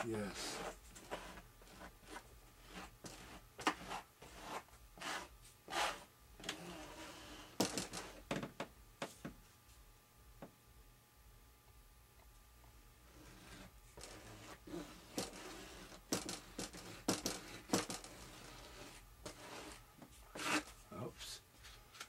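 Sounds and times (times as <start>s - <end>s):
hand rubbing and scraping: 0.0s - 8.3s, 13.0s - 22.0s.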